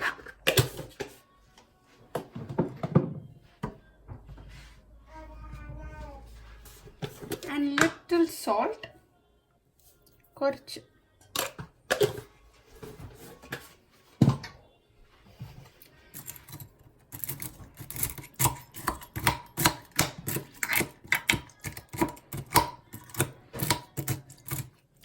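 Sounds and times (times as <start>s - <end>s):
utensils clicking against container: 16.1s - 24.7s.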